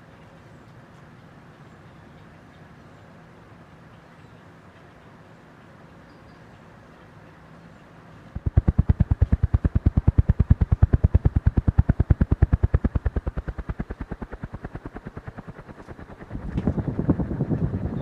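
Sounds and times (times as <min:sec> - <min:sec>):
ceiling fan whooshing: 0:08.3 - 0:18.0.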